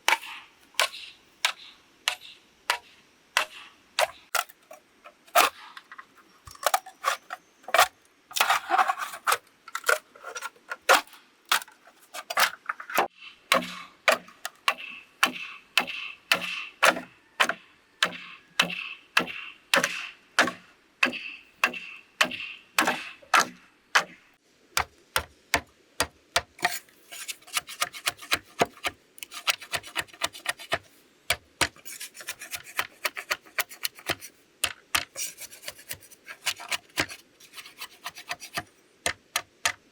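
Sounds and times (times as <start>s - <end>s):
tools striking bamboo: 0.0s - 4.7s, 13.0s - 24.2s, 24.8s - 39.9s
rasping strokes on bamboo: 13.0s - 24.2s, 26.5s - 39.8s.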